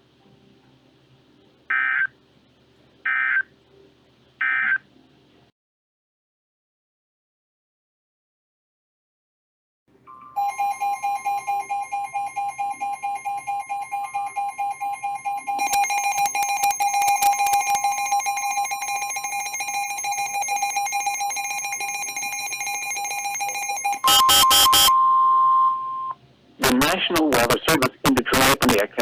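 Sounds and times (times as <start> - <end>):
buzzing two-tone alarm: 10.1 - 26.2
steady high single tone: 10.1 - 26.2
bursts of data noise: 10.4 - 24.9.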